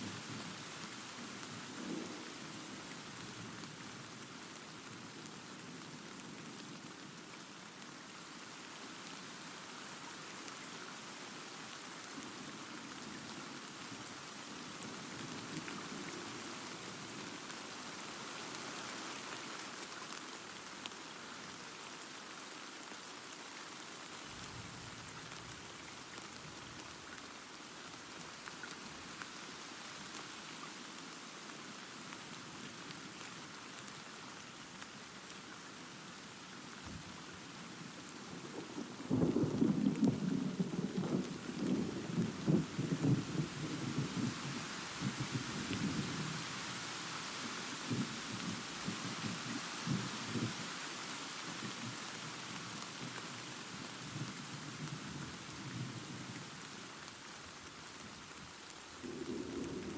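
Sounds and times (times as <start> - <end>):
steady rain falling: 0.0 - 59.9
distant thunder rumbling: 59.0 - 59.9.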